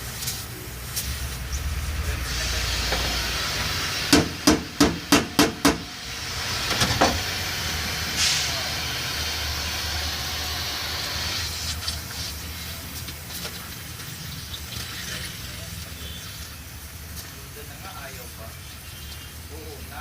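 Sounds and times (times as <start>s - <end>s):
steady background noise: 0.0s - 20.0s
hammer striking sheet metal: 4.1s - 5.9s.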